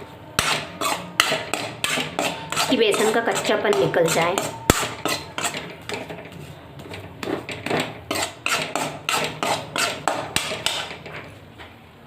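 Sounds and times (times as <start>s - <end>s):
spoon scraping a pan: 0.0s - 11.4s.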